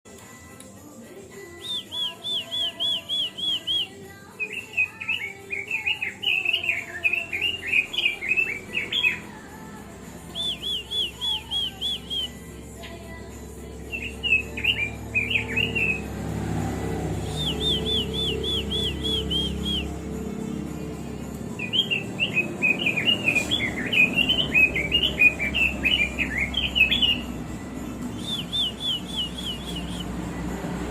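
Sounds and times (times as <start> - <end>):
bird singing whistled warble: 1.5 - 9.3, 10.3 - 13.0, 13.9 - 16.1, 17.2 - 20.0, 21.6 - 27.4, 28.1 - 30.2
bird clear arched notes: 21.3 - 27.4.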